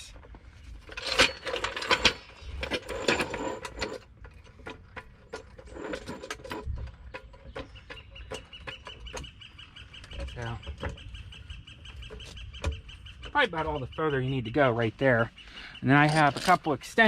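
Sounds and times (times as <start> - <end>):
jack clicking and knocking: 0.9 - 11.3.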